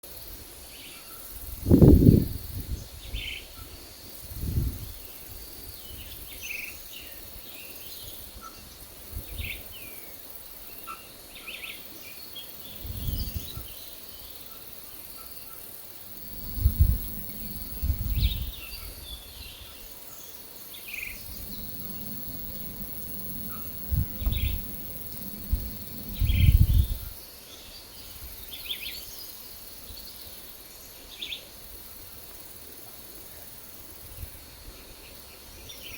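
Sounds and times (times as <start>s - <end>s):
high-pitched insect drone: 16.0s - 18.9s, 21.1s - 27.2s
low rumbles: 16.1s - 18.8s, 21.2s - 27.2s
birds chirping: 16.1s - 19.3s, 20.9s - 27.2s.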